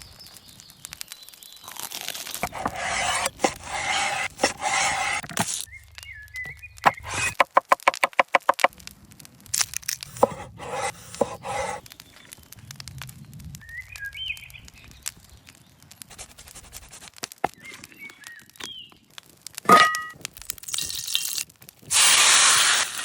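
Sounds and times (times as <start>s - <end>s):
rustling and scraping: 1.8s - 5.7s, 6.5s - 7.4s, 9.9s - 12.4s
birds chirping: 2.4s - 7.4s, 17.5s - 19.1s
sharp clicks and cracks: 5.1s - 10.3s.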